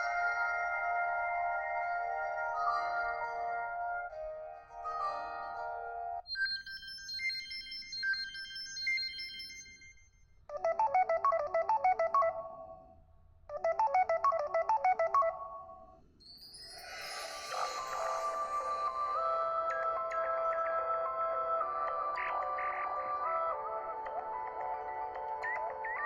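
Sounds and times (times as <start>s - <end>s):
phone ringtone melody: 10.5s - 12.8s, 13.5s - 15.8s, 16.9s - 26.0s.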